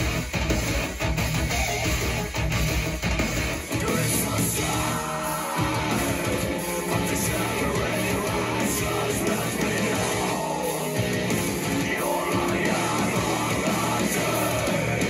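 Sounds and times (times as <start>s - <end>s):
rock music with guitars and drums: 0.0s - 15.0s.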